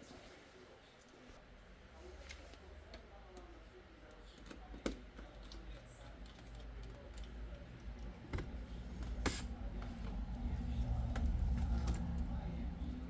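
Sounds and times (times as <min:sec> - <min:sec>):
low rumble: 0:09.5 - 0:13.0.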